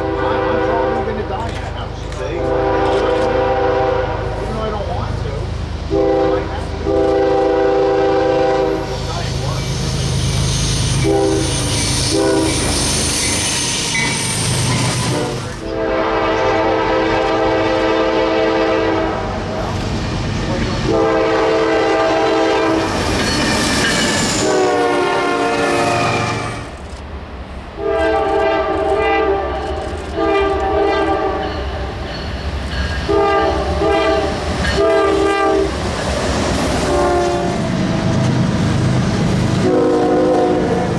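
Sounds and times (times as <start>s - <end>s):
locomotive air horn blasts: 0.0s - 1.2s, 2.4s - 4.4s, 5.9s - 9.0s, 10.8s - 19.3s, 20.9s - 22.9s, 24.4s - 26.7s, 27.8s - 31.6s, 33.1s - 35.8s, 36.8s - 37.6s, 39.6s - 40.9s
train rumbling: 0.0s - 40.9s.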